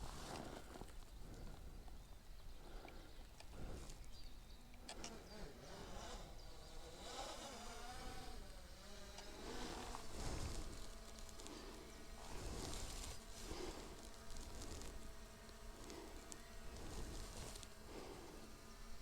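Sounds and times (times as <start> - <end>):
drone propellers buzzing: 4.8 - 19.0.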